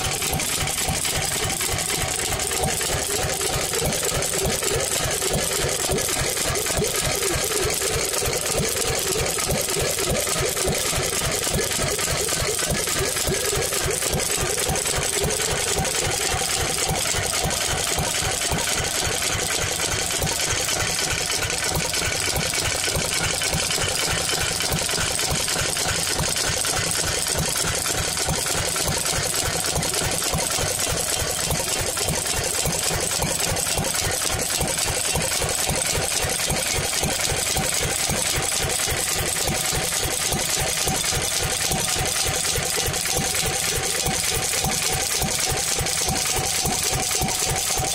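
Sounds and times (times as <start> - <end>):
stationary engine running: 0.0 - 47.9.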